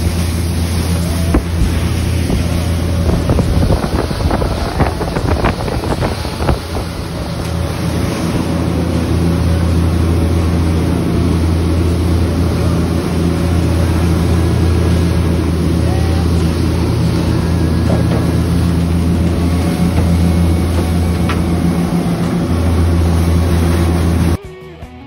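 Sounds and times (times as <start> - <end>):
wind buffeting microphone: 0.0 - 15.8
boat engine running: 0.0 - 24.5.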